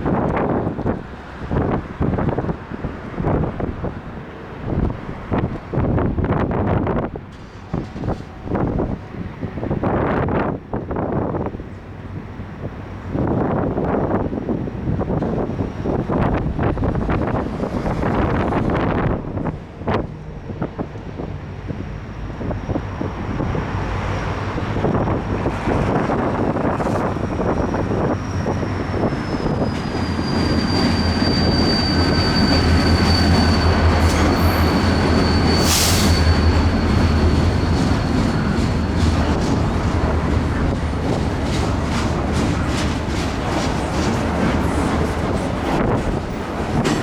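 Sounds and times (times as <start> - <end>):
freight train rolling past: 0.0 - 47.0
high-pitched wheel squeal: 26.7 - 46.0
wheels clicking over rail joints: 37.4 - 47.0.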